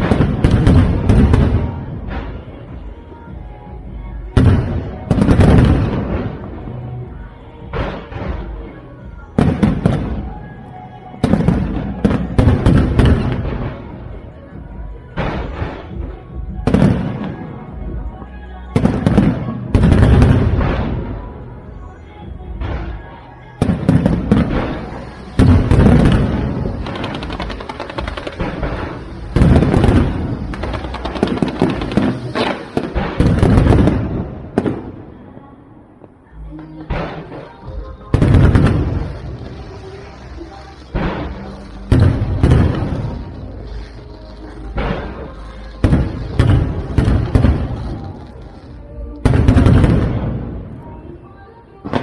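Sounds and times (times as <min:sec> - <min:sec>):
fireworks bangs: 0:00.0 - 0:52.0
music playing: 0:00.0 - 0:52.0
firework shell bursts: 0:36.9 - 0:51.0.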